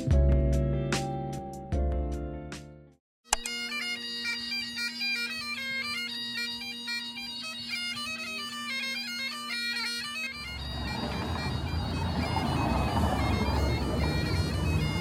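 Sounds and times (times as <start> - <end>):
bagpipe drone: 3.3 - 15.0
bagpipes playing melody: 3.3 - 15.0.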